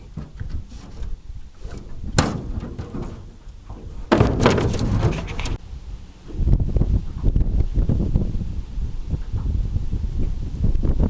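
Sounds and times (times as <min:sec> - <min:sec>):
knocking and rustling handling noise: 0:00.0 - 0:05.6
wind buffeting the microphone: 0:00.0 - 0:11.0
single thud: 0:01.7 - 0:05.6.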